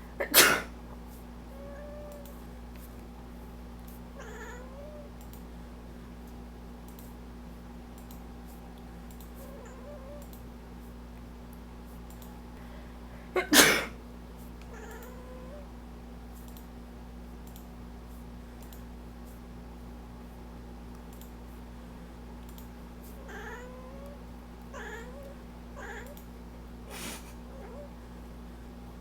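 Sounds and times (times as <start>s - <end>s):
person sneezing: 0.2s - 0.7s, 13.4s - 14.0s, 26.9s - 27.4s
cat meowing: 4.2s - 5.1s, 14.7s - 15.6s, 23.2s - 26.2s.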